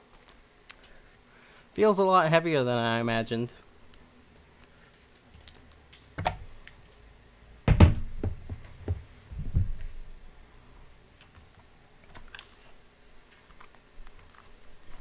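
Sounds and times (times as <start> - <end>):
box knocks and thumps: 7.7 - 9.8.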